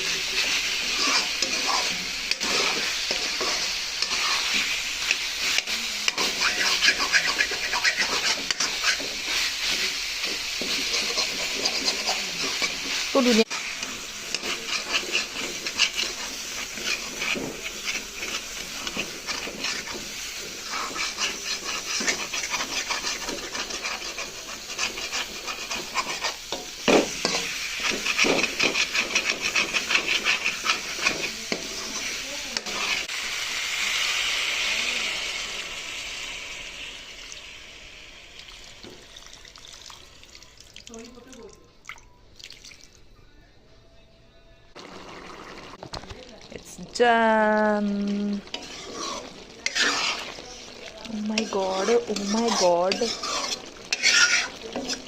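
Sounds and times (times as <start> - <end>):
spatula scraping a pan: 0.0 - 33.1, 47.9 - 55.0
curry sizzling in a pan: 0.0 - 41.7, 44.7 - 55.0.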